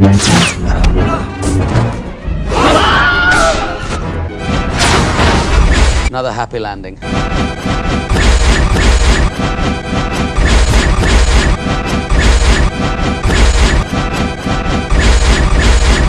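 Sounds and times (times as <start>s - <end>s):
music: 0.0s - 8.2s
crashing and smashing effects: 4.5s - 6.1s.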